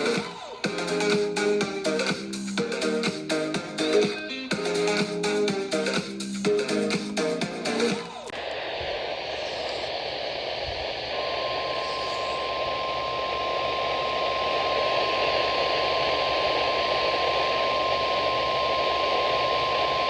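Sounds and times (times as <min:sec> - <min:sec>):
radio static and hiss: 0:00.0 - 0:20.0
steady alarm tone: 0:08.6 - 0:20.0.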